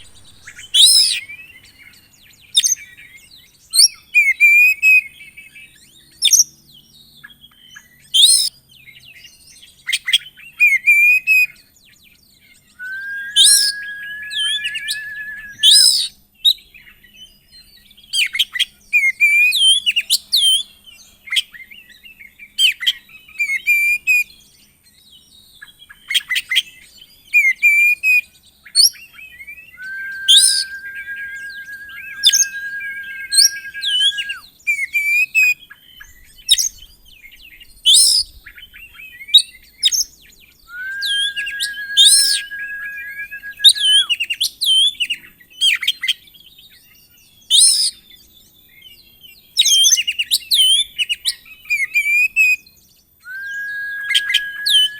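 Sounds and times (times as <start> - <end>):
bird singing varied song: 0.0 - 54.9.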